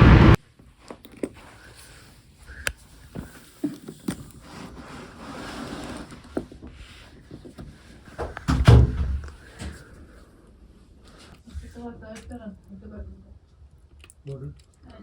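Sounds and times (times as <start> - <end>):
low thump: 0.0 - 0.4.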